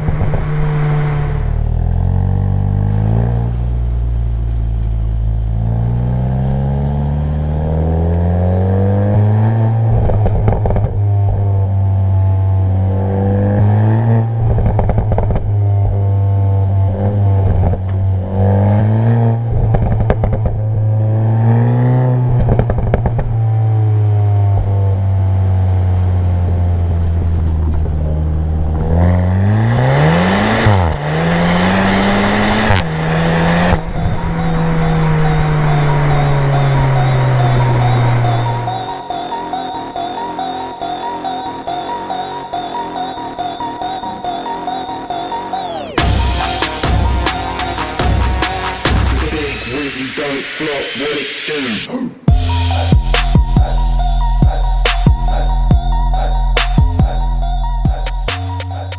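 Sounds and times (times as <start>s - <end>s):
car engine revving: 0.0s - 39.1s, 45.9s - 58.9s
exhaust crackles: 0.0s - 39.1s
loud rushing noise: 46.0s - 53.8s.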